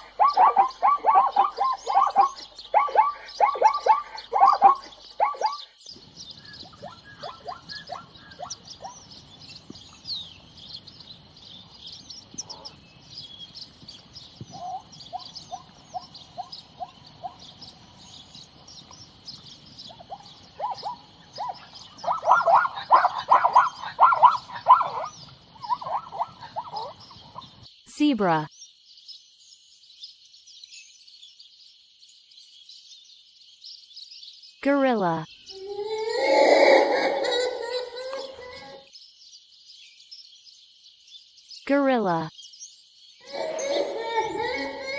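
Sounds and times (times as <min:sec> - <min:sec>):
zebra barking yelps: 0:00.0 - 0:05.7, 0:06.5 - 0:09.1, 0:14.5 - 0:17.5, 0:19.9 - 0:27.5, 0:35.6 - 0:38.8
birds chirping: 0:00.0 - 0:44.9.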